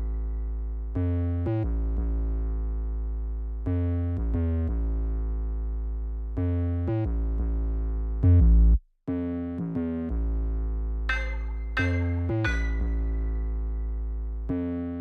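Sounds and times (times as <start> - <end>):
synthesizer music with heavy bass: 9.1 - 15.0.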